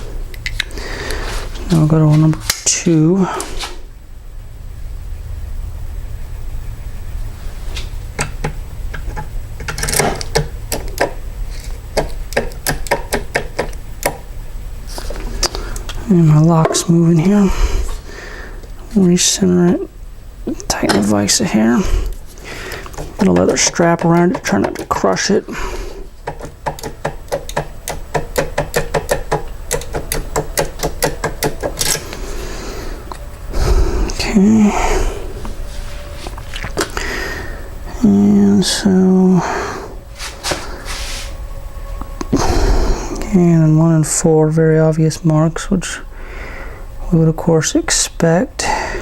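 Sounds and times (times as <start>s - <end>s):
steady low hum: 0.0s - 49.0s
metal scrape: 40.1s - 41.4s.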